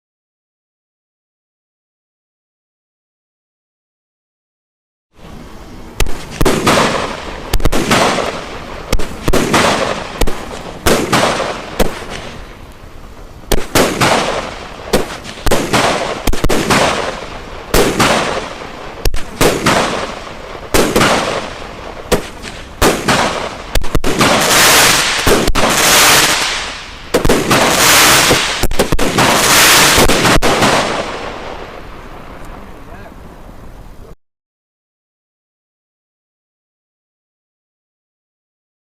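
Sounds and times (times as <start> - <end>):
dense firework crackling: 5.2 - 34.2
hissing crackling firework tails: 5.2 - 34.2
firework shots launching: 6.0 - 12.7, 13.4 - 32.7.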